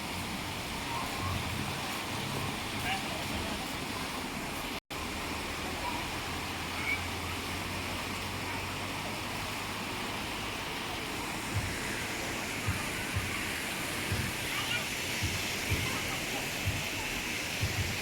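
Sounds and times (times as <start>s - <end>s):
rushing water: 0.0s - 18.0s
short low thumps: 11.4s - 12.0s, 12.6s - 14.6s, 15.2s - 18.0s.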